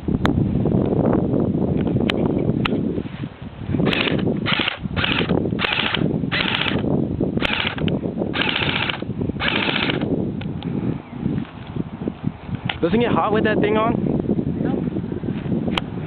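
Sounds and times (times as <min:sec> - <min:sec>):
airsoft gun full-auto fire: 0:03.9 - 0:06.8, 0:07.4 - 0:07.8, 0:08.4 - 0:10.0.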